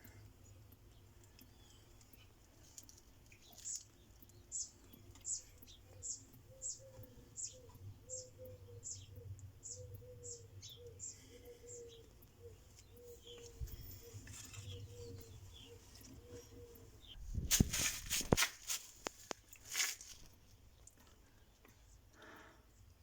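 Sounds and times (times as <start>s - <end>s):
small bird chirping: 0.4s - 17.7s.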